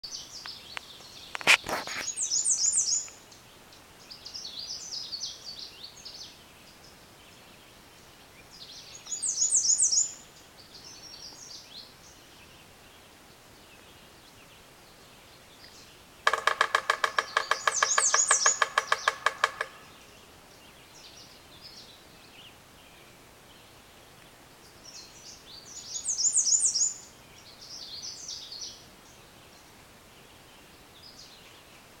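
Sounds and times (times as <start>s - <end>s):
high bird song phrases: 0.1s - 24.0s, 24.6s - 31.9s
woodpecker drumming on metal sign: 16.2s - 20.0s.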